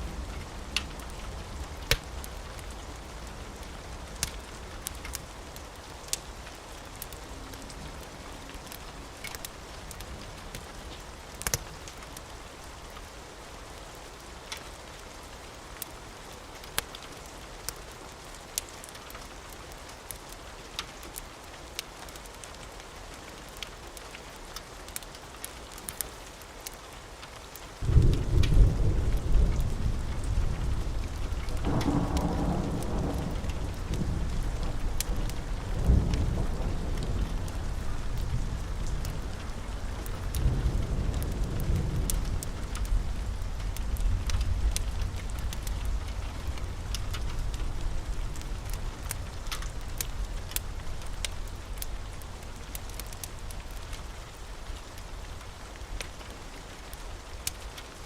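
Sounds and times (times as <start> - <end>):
steady rain: 0.0 - 58.0
thunder clap and rumbling: 27.8 - 52.2.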